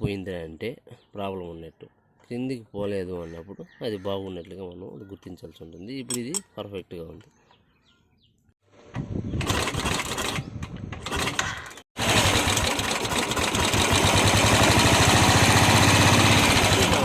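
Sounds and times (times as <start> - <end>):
motorcycle engine running: 9.1 - 17.0.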